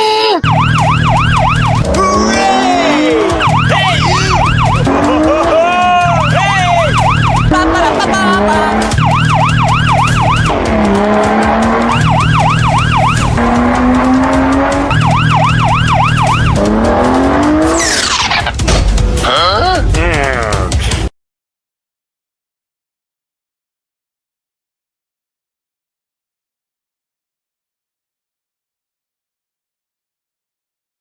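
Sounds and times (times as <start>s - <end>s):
siren yelping: 0.4s - 18.4s.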